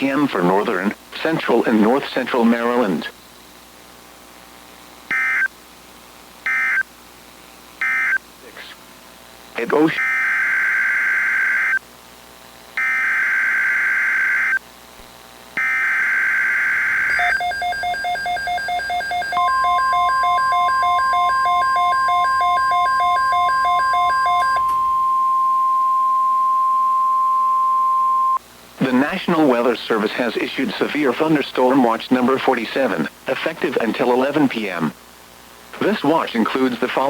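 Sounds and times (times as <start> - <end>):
steady warning alarm tone: 9.8 - 11.8, 12.8 - 14.6, 15.6 - 29.1
screeching digital data tones: 15.6 - 25.4.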